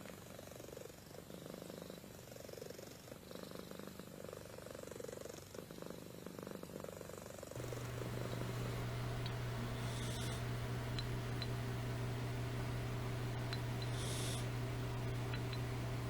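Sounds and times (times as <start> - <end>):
cat purring: 0.3 - 16.0
steady low hum: 7.6 - 16.0.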